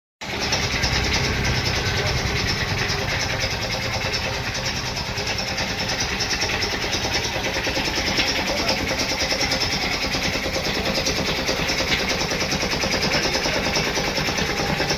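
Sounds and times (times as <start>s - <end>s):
machine motor running: 0.2s - 14.9s.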